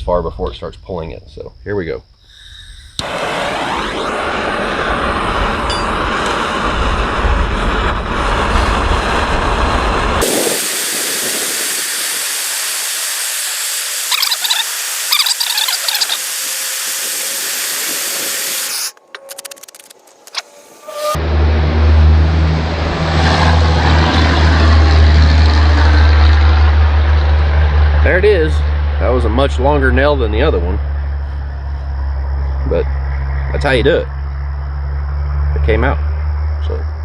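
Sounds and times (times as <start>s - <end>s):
gas torch hissing: 2.3s - 19.0s
deep rumble: 2.8s - 10.5s, 21.0s - 37.0s.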